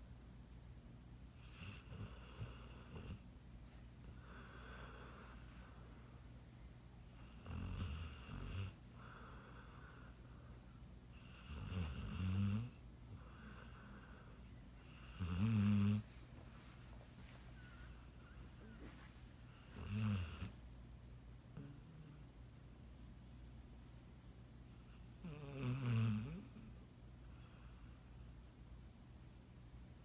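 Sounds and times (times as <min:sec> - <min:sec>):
dog snoring: 0:01.4 - 0:03.2, 0:07.2 - 0:10.1, 0:11.2 - 0:16.1, 0:19.5 - 0:20.6, 0:21.6 - 0:22.2, 0:25.2 - 0:26.7.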